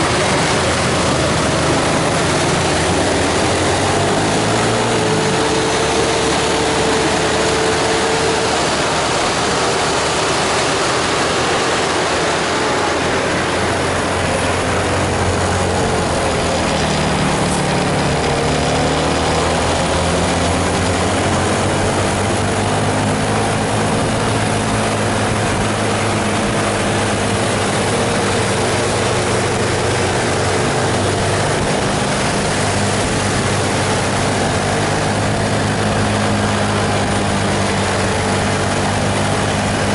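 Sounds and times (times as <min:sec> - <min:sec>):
bus diesel engine running: 0:00.0 - 0:39.9
rain hissing on wet road: 0:00.0 - 0:39.9.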